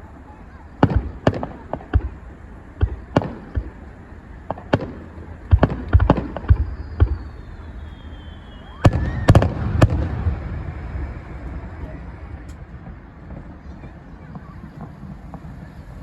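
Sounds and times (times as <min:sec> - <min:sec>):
fireworks bangs and cracks: 0:00.0 - 0:16.0.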